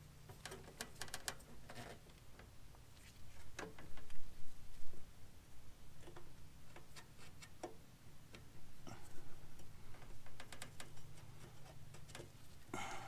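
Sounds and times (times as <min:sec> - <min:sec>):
low steady hum: 0:07.8 - 0:13.0.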